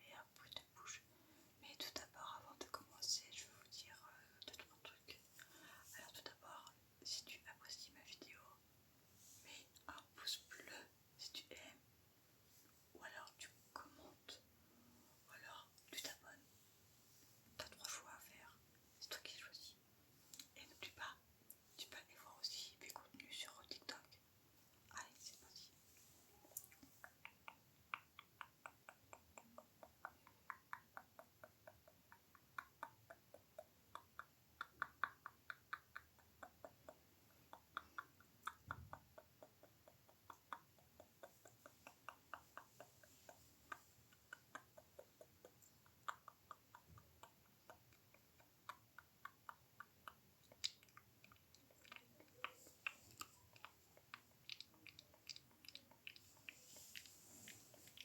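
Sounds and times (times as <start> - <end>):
wet mouth clicks and smacks: 26.5 - 58.0.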